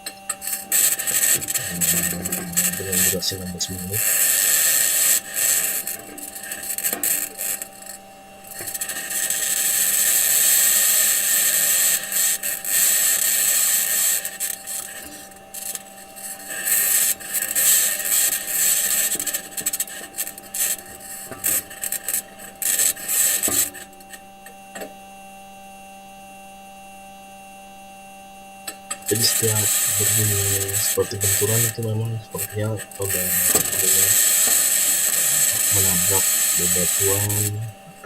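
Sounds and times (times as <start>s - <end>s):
steady electrical hum: 0.0s - 38.0s.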